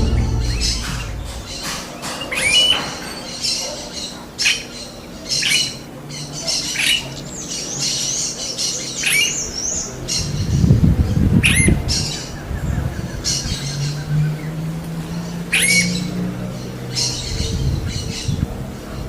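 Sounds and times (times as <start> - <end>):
low rumble: 0.0 - 2.0.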